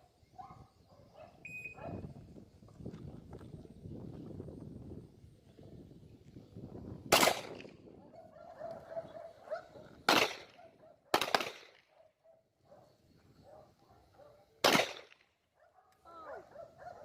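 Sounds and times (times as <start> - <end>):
handgun shots: 7.1 - 7.7, 10.1 - 11.8, 14.6 - 15.2.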